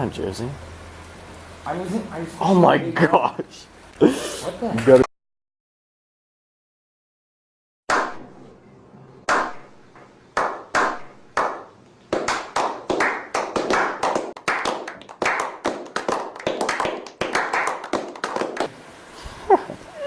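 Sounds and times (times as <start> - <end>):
hands clapping: 9.3 - 9.6, 10.4 - 18.7.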